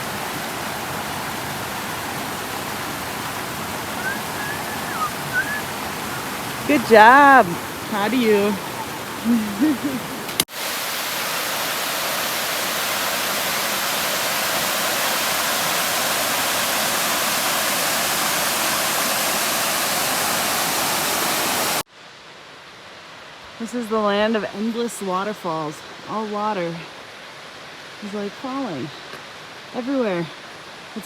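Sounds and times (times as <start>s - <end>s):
waterfall rushing water: 0.0s - 21.8s.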